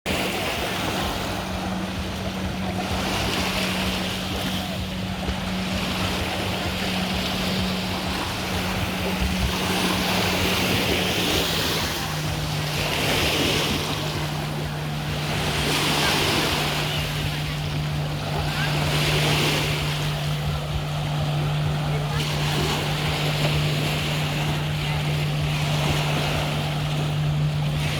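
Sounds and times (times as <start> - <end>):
engine hum: 0.1 - 27.9
sea water washing in swells: 0.1 - 27.9.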